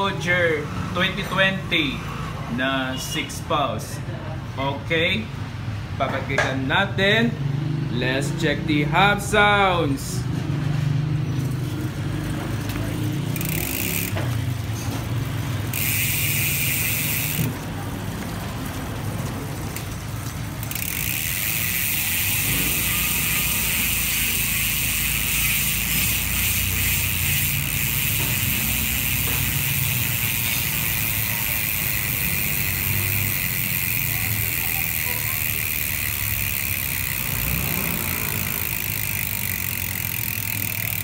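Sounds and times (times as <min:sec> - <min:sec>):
bicycle freehub clicking: 0:11.3 - 0:41.0.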